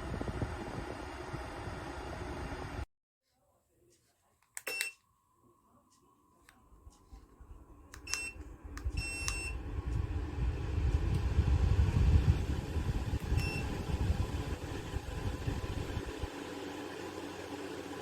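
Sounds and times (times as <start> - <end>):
heater fan rushing air: 0.0 - 2.8, 6.5 - 18.0
control panel beeping: 4.6 - 5.0, 8.0 - 9.6.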